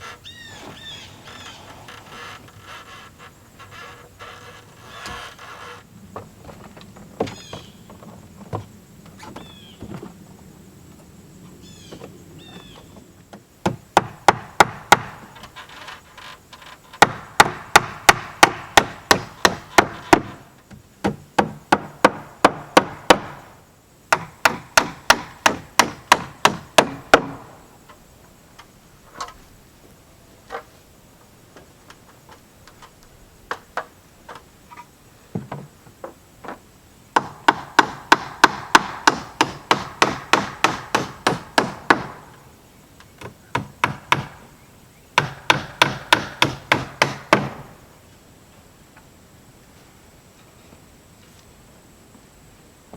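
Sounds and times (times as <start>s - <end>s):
hammer striking nails into wood: 13.6s - 15.3s, 17.0s - 20.4s, 21.0s - 23.4s, 24.1s - 27.6s, 37.2s - 42.4s, 43.2s - 44.4s, 45.2s - 47.8s.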